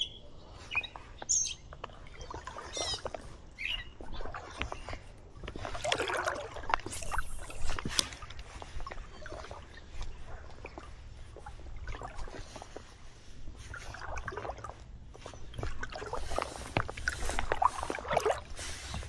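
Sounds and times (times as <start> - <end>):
river water sloshing and splashing: 5.6 - 8.2.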